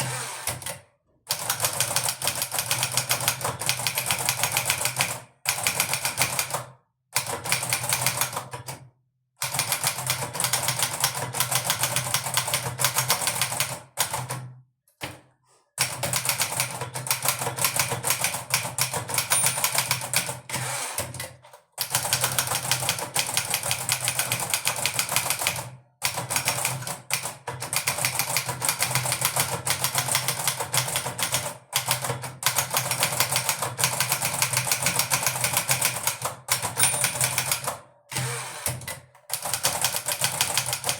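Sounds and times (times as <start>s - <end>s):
typewriter keys clattering: 27.8s - 37.7s, 39.4s - 40.9s.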